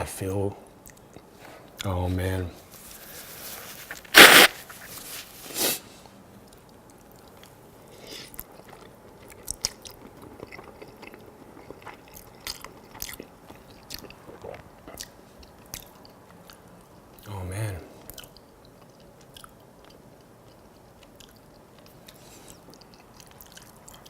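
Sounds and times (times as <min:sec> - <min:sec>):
wet chewing clicks and smacks: 0:00.8 - 0:01.9, 0:08.4 - 0:17.0, 0:18.1 - 0:24.0.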